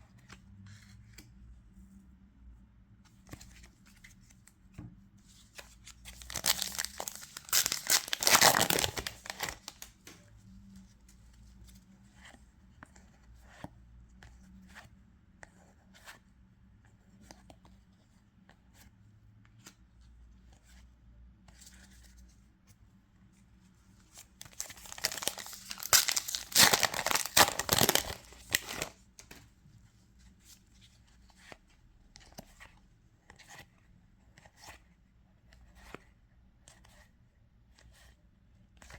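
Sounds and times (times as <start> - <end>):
cards rustling and clicking: 5.6 - 10.2, 24.1 - 29.5
wrappers tearing and crinkling: 6.2 - 9.9, 24.4 - 28.9.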